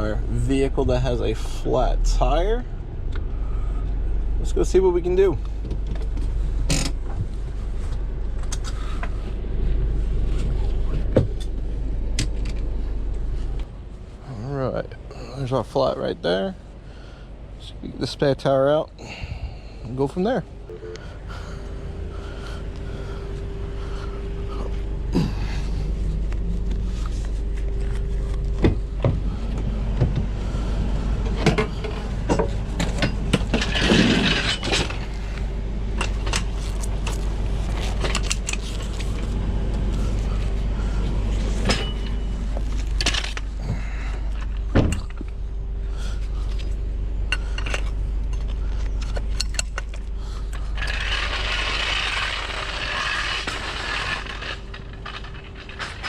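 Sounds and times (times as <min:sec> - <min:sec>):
vehicle engine idling: 0:00.0 - 0:56.0
metallic clanks and rattles: 0:31.2 - 0:35.3, 0:37.8 - 0:39.3, 0:41.4 - 0:45.4, 0:46.5 - 0:56.0
scraping rustle: 0:36.1 - 0:43.6, 0:50.6 - 0:56.0.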